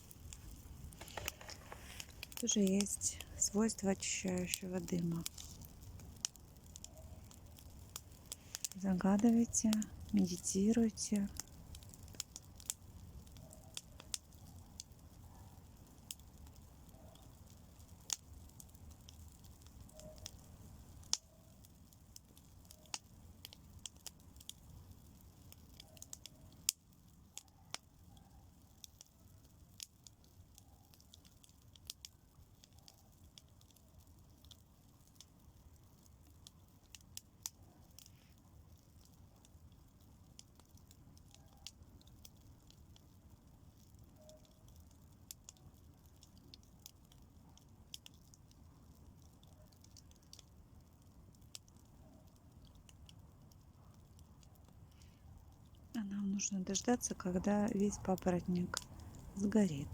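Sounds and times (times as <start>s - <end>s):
bonfire crackling: 0.0s - 59.9s
sharp pops and snaps of burning ferns: 0.0s - 59.9s.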